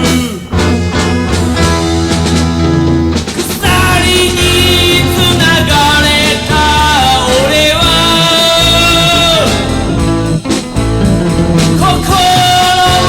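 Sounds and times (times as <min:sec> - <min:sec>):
person singing: 0:00.0 - 0:01.5, 0:03.4 - 0:10.2, 0:11.0 - 0:13.0
rock song with electric guitar: 0:00.0 - 0:13.0.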